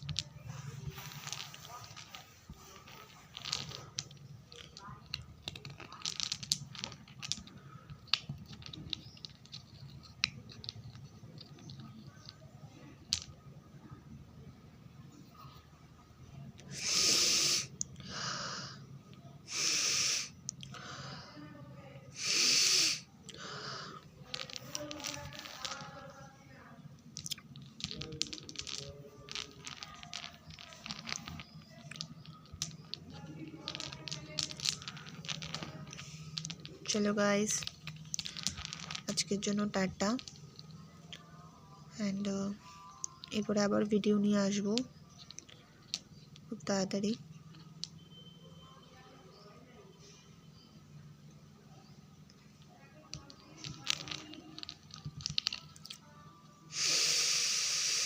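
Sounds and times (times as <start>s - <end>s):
mothballs clicking and rattling: 0.0s - 15.6s, 16.2s - 58.0s.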